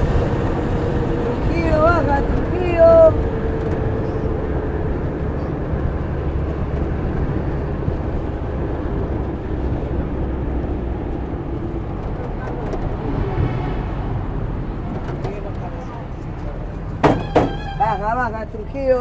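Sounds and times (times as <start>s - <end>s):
engine and road rumble inside vehicle: 0.0s - 19.0s.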